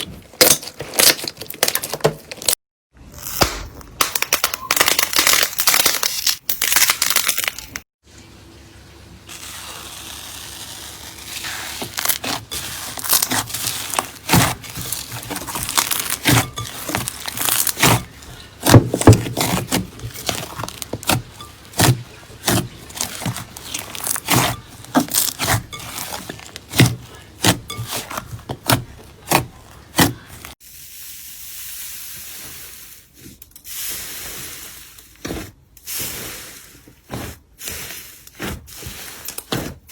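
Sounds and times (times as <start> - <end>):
slime crackling and popping: 3.2 - 7.8, 9.3 - 30.4.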